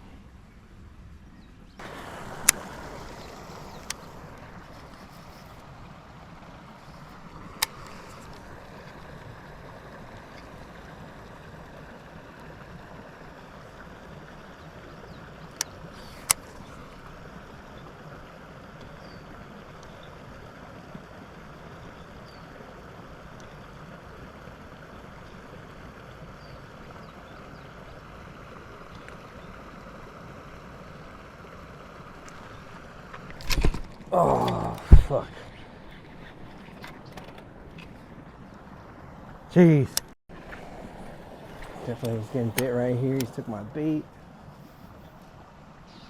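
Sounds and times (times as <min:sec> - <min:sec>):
outdoor background noise: 0:00.0 - 0:46.0
sharp clicks: 0:03.7 - 0:04.1, 0:07.6 - 0:08.4, 0:42.0 - 0:43.4.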